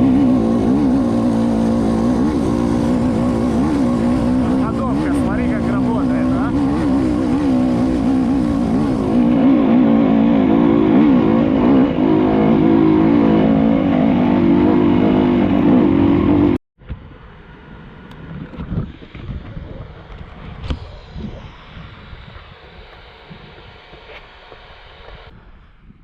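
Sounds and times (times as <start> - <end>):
motorcycle engine revving: 0.0 - 16.6.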